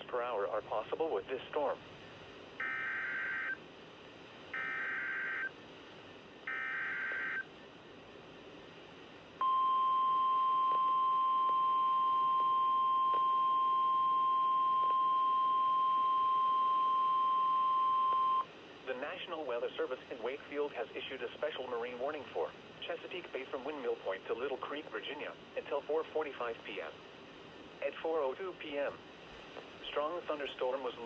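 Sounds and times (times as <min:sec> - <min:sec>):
steady whistle-like alarm tone: 0:09.4 - 0:18.5.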